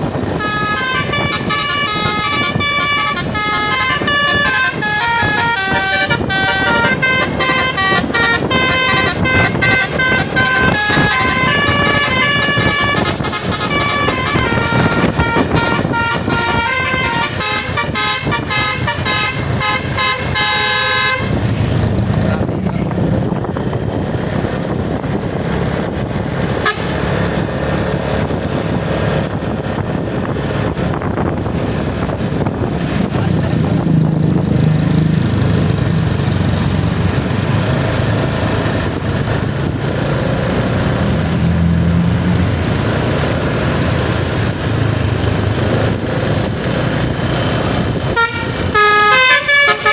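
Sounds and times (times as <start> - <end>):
heavy engines and traffic rumble: 0.0 - 49.9
bus horn playing melody: 0.2 - 21.6, 26.5 - 27.4, 47.8 - 49.9.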